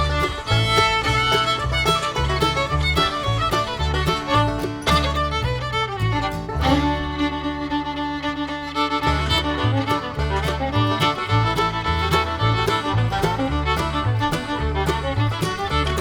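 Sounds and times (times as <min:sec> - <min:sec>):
fiddle: 0:00.0 - 0:16.0
plucked string backing: 0:00.0 - 0:16.0
walking bass line: 0:00.0 - 0:16.0.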